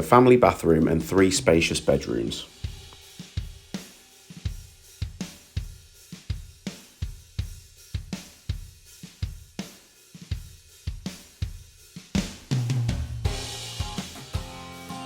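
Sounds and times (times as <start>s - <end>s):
drum beat: 0.0s - 15.0s.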